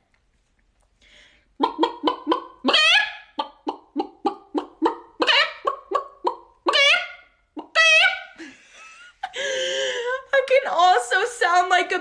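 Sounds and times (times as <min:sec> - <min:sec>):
person imitating chicken clucks: 0:01.6 - 0:08.4
drawn-out squawk: 0:06.7 - 0:08.4.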